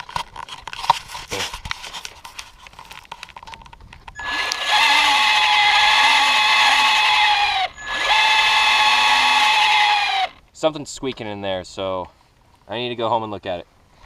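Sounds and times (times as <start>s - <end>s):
drivetrain squeak: 4.2s - 10.4s
toy truck electric motor whine: 4.2s - 10.4s.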